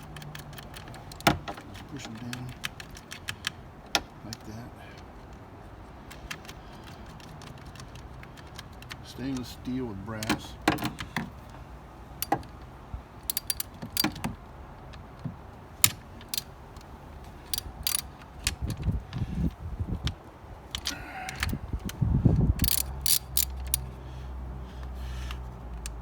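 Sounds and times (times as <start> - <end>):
ratchet wrench clicking: 13.2 - 14.2, 17.4 - 18.8, 22.6 - 23.9
metal parts clinking: 13.2 - 14.3, 15.8 - 18.8, 22.6 - 24.0.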